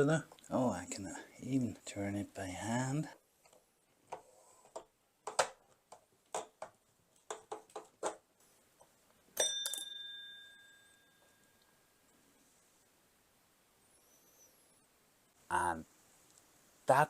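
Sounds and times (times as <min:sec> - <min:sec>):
sharp metallic clink: 0:09.4 - 0:11.2.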